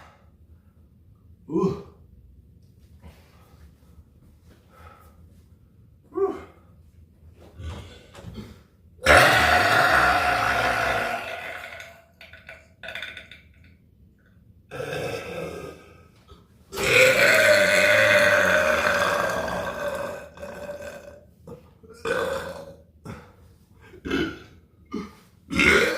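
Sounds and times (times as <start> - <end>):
person burping: 1.5 - 2.0, 9.0 - 13.6, 14.7 - 16.0, 16.7 - 25.9.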